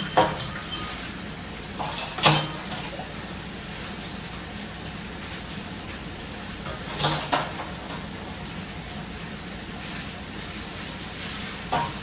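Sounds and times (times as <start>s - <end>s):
utensil clinking on cookware: 0.0s - 1.2s, 1.8s - 3.1s
food sizzling in a pot: 9.1s - 12.0s.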